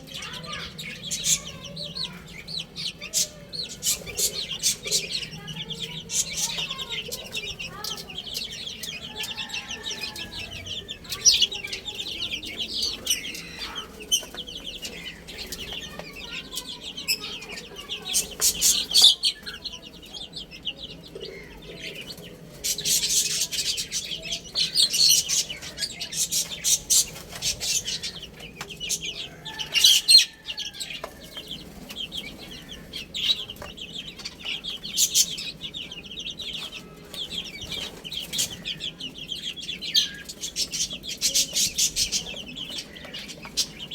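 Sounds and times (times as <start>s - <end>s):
baby chicks peeping: 0.0s - 43.9s.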